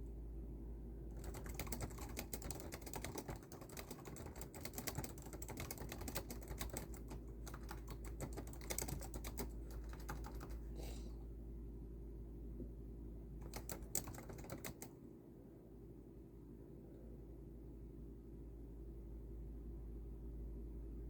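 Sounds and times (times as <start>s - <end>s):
fast typing on keyboard: 1.2s - 10.6s, 13.4s - 14.9s.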